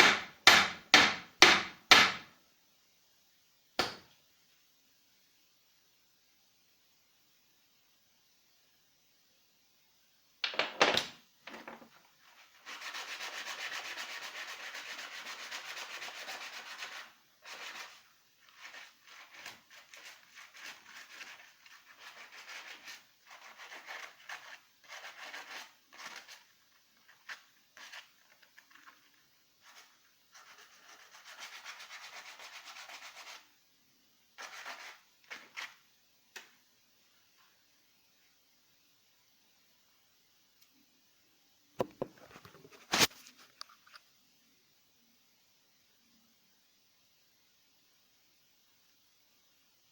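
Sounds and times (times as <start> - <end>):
sharp scrape: 12.5 - 26.5, 42.2 - 43.5.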